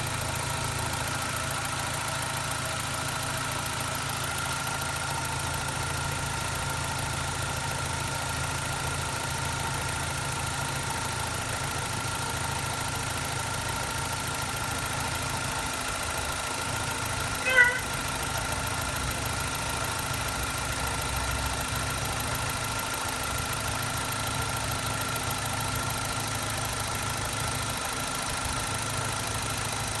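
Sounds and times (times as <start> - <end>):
car engine idling: 0.0 - 30.0
dog barking: 17.4 - 17.9.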